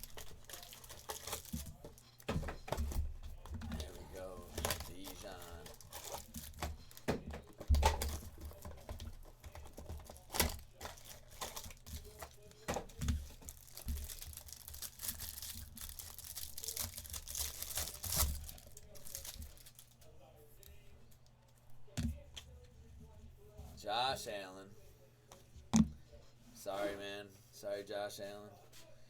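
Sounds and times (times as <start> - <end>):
card pack wrappers crinkling: 0.0 - 2.9, 3.7 - 20.0.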